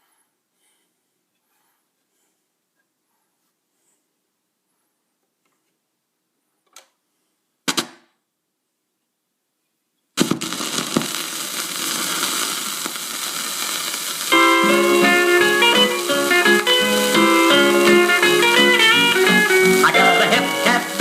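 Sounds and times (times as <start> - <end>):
stylus hiss and crackle: 10.2 - 21.0.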